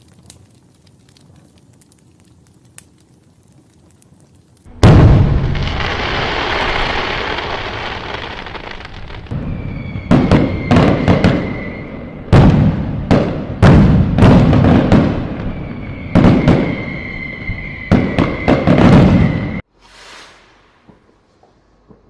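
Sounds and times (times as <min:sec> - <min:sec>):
firework whistle: 0:04.7 - 0:21.0
firework hiss: 0:04.7 - 0:21.4
fireworks bangs: 0:04.7 - 0:22.0.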